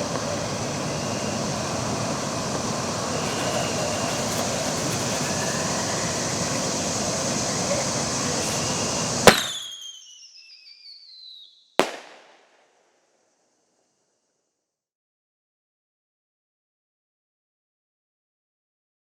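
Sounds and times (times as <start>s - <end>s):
steady background noise: 0.0s - 9.8s
falling whistle: 0.0s - 11.9s
mortar launch bang: 9.2s - 9.7s, 11.8s - 12.3s
shell bursting bang: 9.2s - 9.8s, 11.8s - 12.5s.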